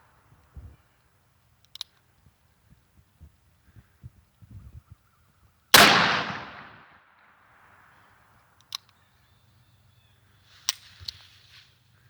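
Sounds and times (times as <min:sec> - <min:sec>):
handgun shot echoing: 0:05.8 - 0:07.0.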